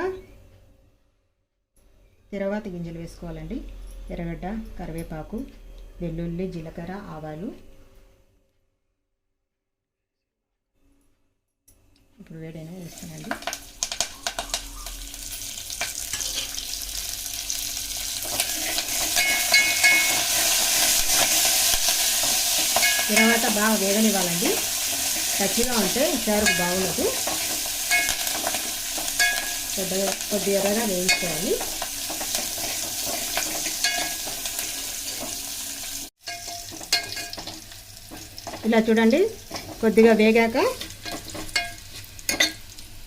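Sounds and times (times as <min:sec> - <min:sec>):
spices sizzling in hot oil: 0:12.6 - 0:43.0.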